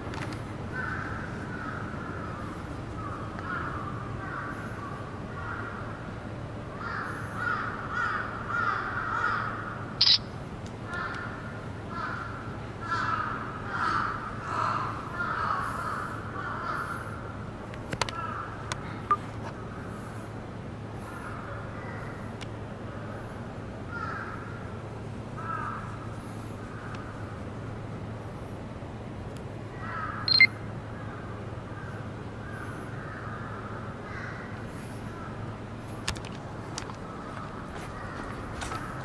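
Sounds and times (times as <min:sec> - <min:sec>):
steady low hum: 0:00.0 - 0:39.0
crows cawing: 0:00.7 - 0:06.0, 0:06.7 - 0:10.2, 0:10.8 - 0:17.4, 0:18.0 - 0:18.7, 0:21.0 - 0:22.3, 0:23.9 - 0:27.4, 0:29.8 - 0:35.5, 0:36.8 - 0:39.0.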